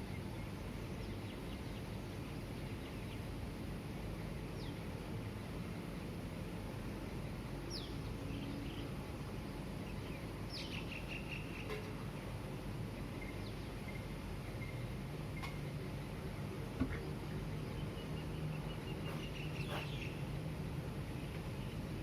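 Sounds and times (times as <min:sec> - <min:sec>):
low traffic hum: 0:00.0 - 0:22.0
birds chirping: 0:16.9 - 0:20.2.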